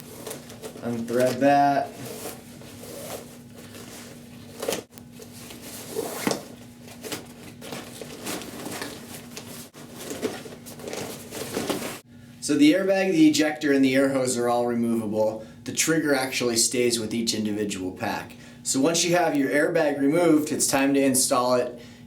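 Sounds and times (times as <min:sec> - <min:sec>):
nylon fabric rustling: 0:00.0 - 0:12.1.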